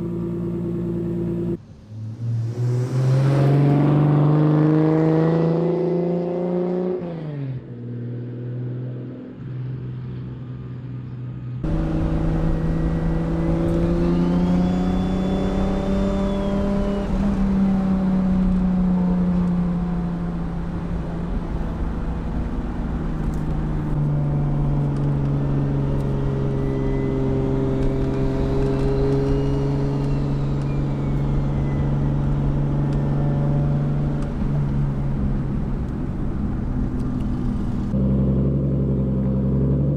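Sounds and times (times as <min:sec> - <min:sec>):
car engine revving: 0:00.0 - 0:07.0, 0:11.6 - 0:39.9
faint high whistle: 0:14.0 - 0:16.9, 0:28.8 - 0:32.3.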